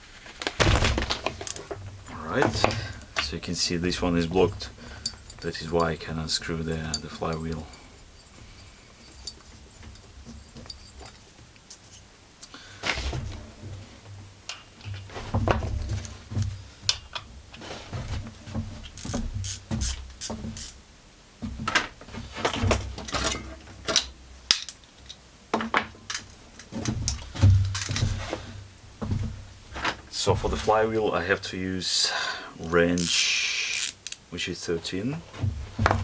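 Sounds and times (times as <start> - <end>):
hand tools clattering: 0.9 - 13.5.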